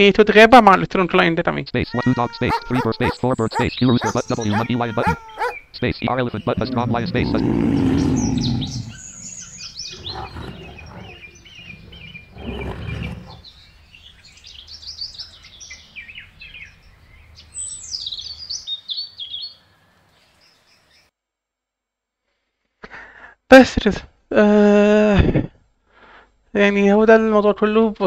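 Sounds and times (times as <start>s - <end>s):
birds chirping: 1.8s - 21.1s
lion roar: 2.4s - 5.6s, 6.5s - 13.5s.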